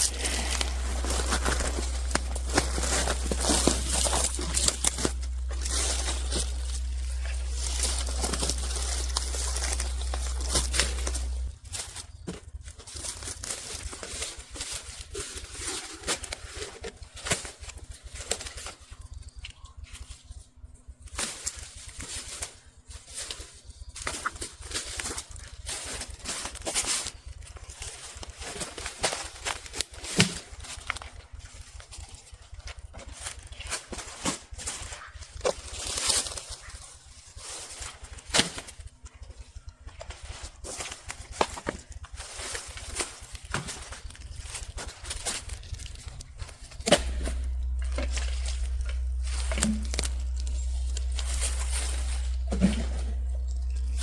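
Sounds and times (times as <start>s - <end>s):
dry branches rustling and crackling: 0.0s - 54.0s
twig snapping: 40.8s - 52.6s.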